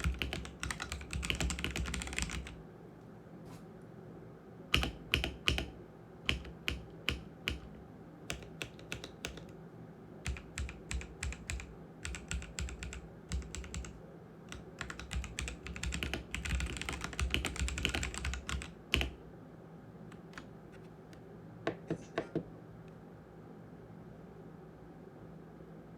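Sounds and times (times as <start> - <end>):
mechanical keyboard typing: 0.0 - 2.6, 4.7 - 9.6, 10.2 - 19.2.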